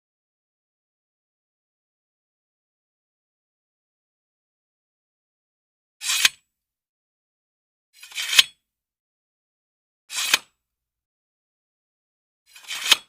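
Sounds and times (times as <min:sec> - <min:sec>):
scraping swish ending in a click: 0:12.5 - 0:13.0.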